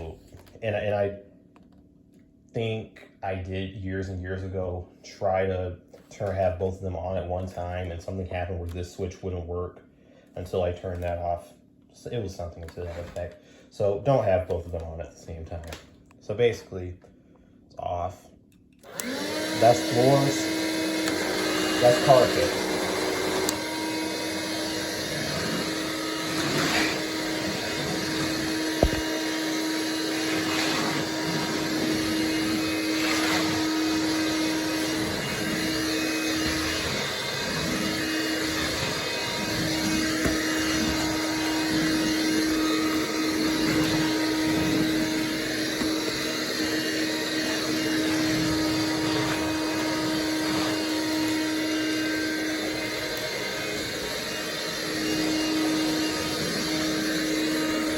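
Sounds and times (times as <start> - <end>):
stick vacuum running: 18.8 - 57.9.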